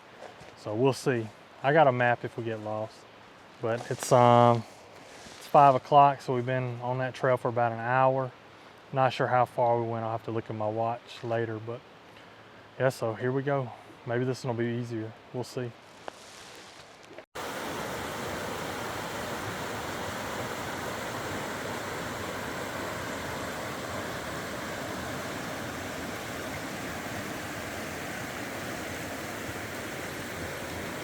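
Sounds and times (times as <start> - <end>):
water rushing: 17.4 - 31.0.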